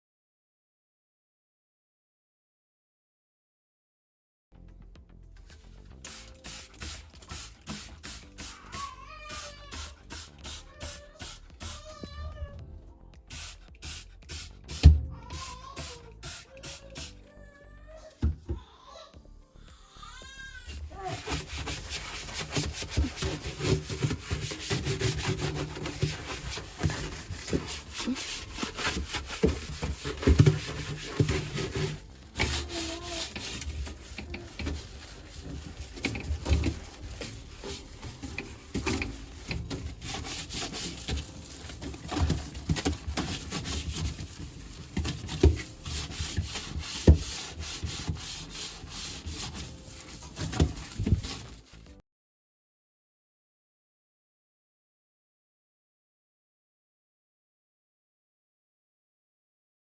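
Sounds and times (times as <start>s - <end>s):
cloth scrubbing hard surfaces: 6.0s - 12.0s, 20.8s - 51.9s.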